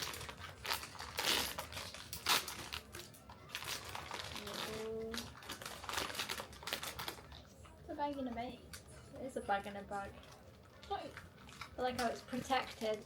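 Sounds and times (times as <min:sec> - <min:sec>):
packaging tearing: 0:00.0 - 0:07.4
plastic packaging crinkling: 0:00.0 - 0:13.0.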